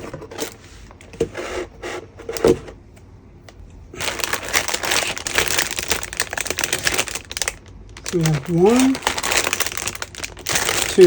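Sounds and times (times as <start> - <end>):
plastic bags crinkling: 4.0 - 11.0.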